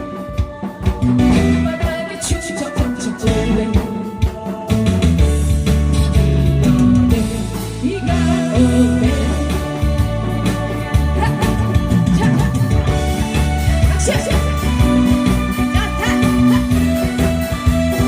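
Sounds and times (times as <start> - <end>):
band playing trot music: 0.0 - 18.0
person singing: 0.0 - 18.0.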